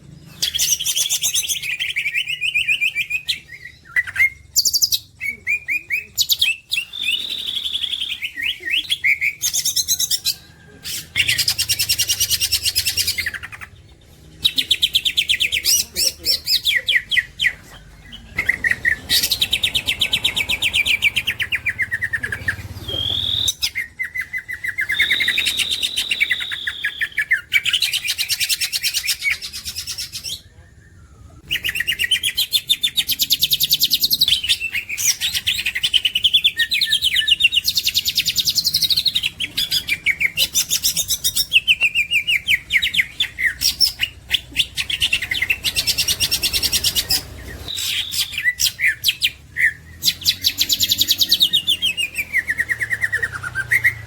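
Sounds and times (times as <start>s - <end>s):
bird singing chattering trills: 0.1s - 54.0s.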